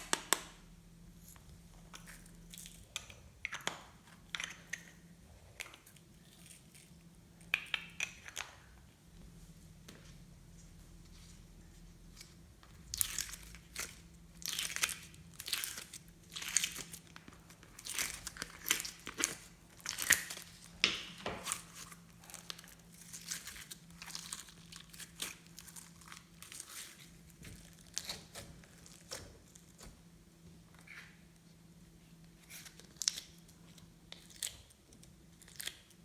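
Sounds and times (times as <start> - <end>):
slime being kneaded by hand: 0.0 - 8.8, 12.0 - 31.3.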